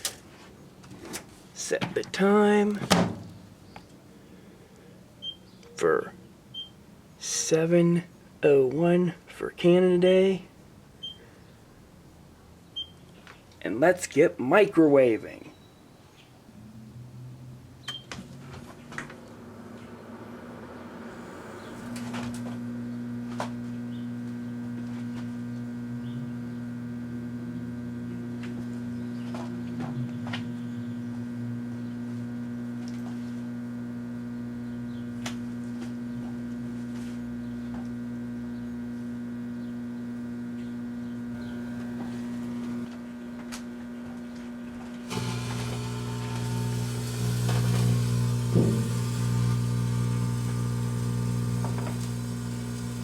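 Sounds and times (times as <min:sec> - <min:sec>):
microwave oven humming: 0:19.3 - 0:53.0
sparklers ticking and crackling: 0:51.6 - 0:53.0.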